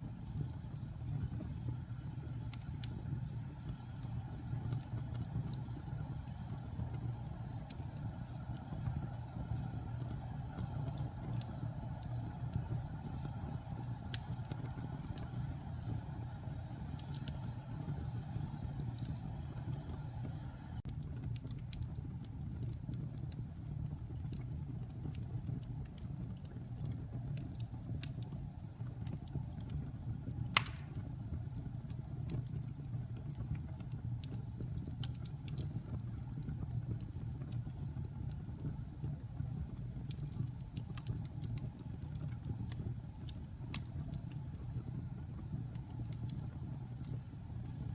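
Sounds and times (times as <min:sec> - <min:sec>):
fire crackling: 0:00.0 - 0:47.9
fire rumbling in fireplace: 0:00.0 - 0:47.9
sharp pop of fire: 0:30.5 - 0:31.2.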